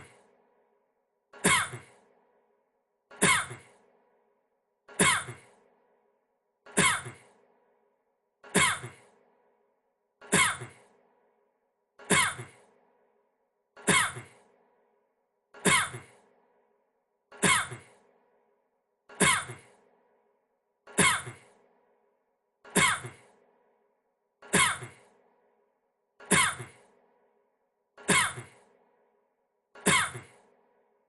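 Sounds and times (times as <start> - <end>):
man coughing: 10.3 - 10.8, 13.8 - 14.4.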